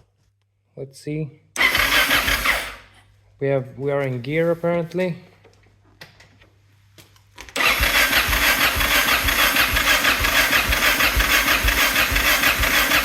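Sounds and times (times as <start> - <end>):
motorcycle electric starter cranking: 1.6 - 2.9, 7.6 - 13.0.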